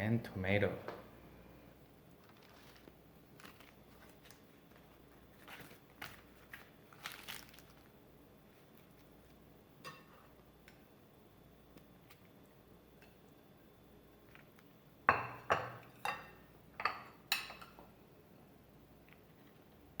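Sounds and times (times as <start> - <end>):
tortilla crinkling and rustling: 1.9 - 9.5.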